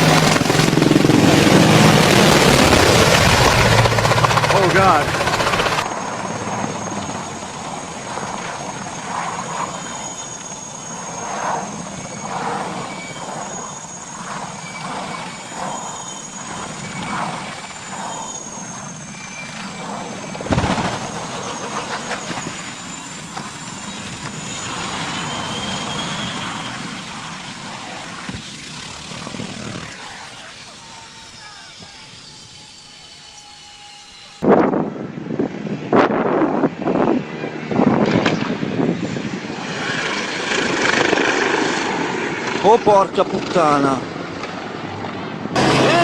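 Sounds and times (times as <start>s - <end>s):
thin high whine: 0.0s - 35.2s
helicopter rotor and engine: 0.0s - 46.0s.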